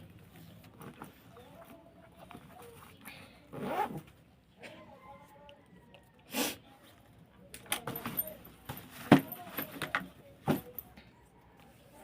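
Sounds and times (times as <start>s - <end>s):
light metallic jingling: 7.8s - 11.0s.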